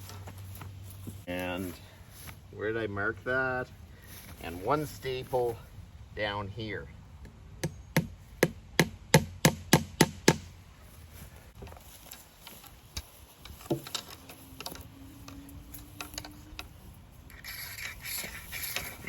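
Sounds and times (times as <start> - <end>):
hammer striking fence staple: 7.6 - 10.5.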